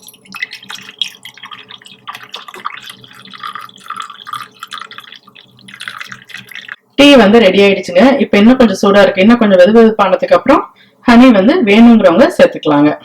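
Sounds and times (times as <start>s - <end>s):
tea trickling and dripping: 0.0s - 6.8s.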